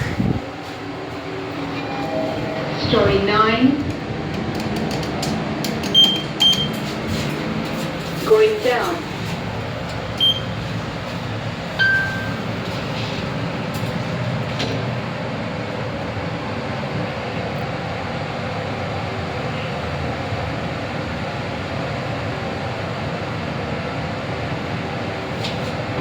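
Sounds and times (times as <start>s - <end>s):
lift running rumble and hum: 0.0s - 26.0s
short beep: 10.2s - 10.5s, 11.8s - 12.4s.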